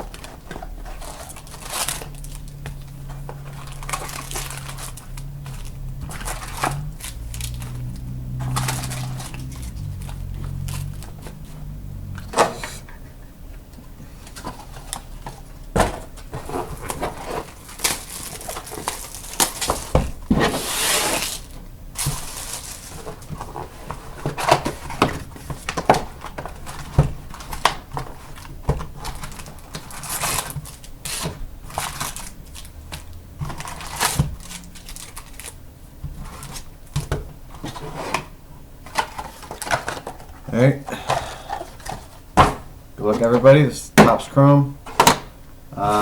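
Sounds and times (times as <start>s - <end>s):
plastic wrap and cardboard crinkling: 0.0s - 12.8s, 14.0s - 44.7s.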